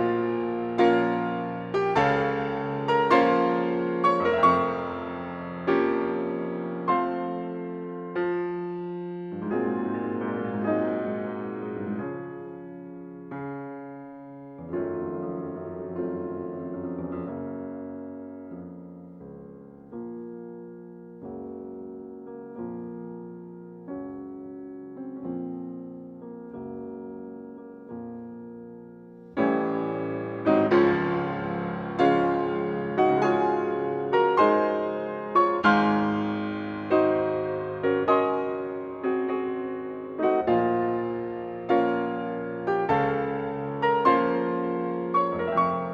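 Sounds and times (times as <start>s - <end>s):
slow piano chords: 0.0s - 45.9s.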